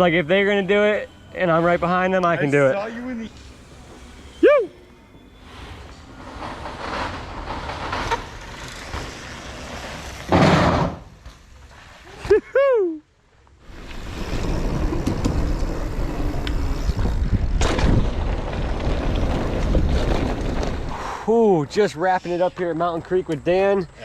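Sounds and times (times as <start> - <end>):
mountain bike tyre noise: 0.0 - 12.4, 13.4 - 23.8
loud gusts or impacts: 10.3 - 11.2, 16.8 - 21.3
wind rush: 13.7 - 21.3.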